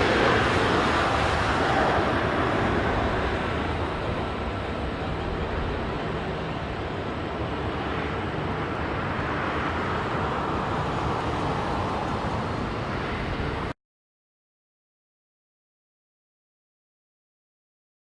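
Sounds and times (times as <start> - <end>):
jet airliner engine: 0.0 - 13.8.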